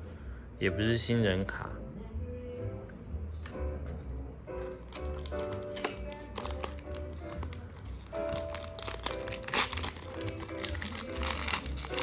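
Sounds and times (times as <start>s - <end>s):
background music: 0.0s - 12.0s
wrapper crinkling and tearing: 4.8s - 12.0s.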